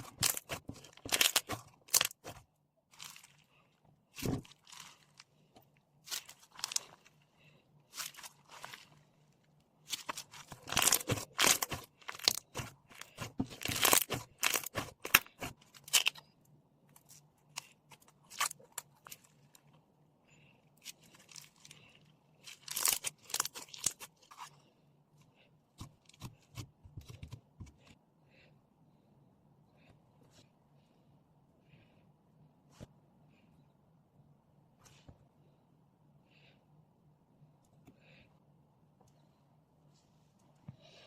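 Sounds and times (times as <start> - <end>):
foam slime crackling: 9.8 - 16.2.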